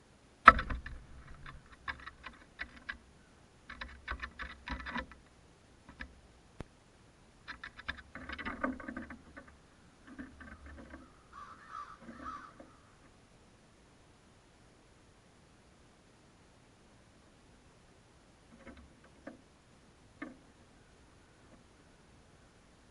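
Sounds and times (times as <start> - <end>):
crow's beak pecking and tapping: 0.4 - 3.0, 3.7 - 5.3, 5.9 - 6.7, 7.4 - 12.8, 18.5 - 19.4, 20.2 - 20.5.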